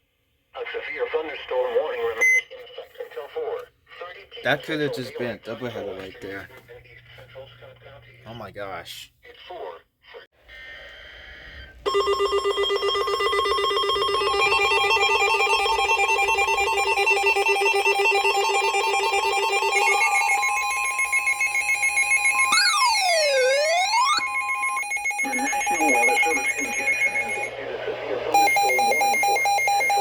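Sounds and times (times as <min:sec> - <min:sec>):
pulsing electronic alert tones: 0:11.9 - 0:27.5.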